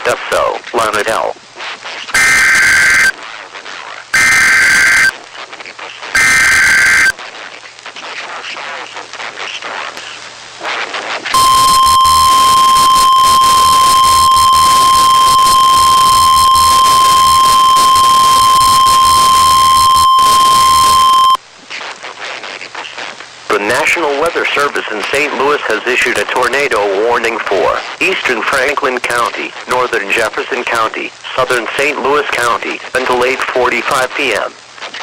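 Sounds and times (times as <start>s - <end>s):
radio hiss: 0.0s - 35.0s
digital header data bursts: 2.2s - 3.2s, 4.1s - 5.1s, 6.2s - 7.2s, 11.4s - 21.4s
steady warning alarm tone: 4.2s - 5.1s, 6.2s - 7.1s, 11.4s - 21.4s.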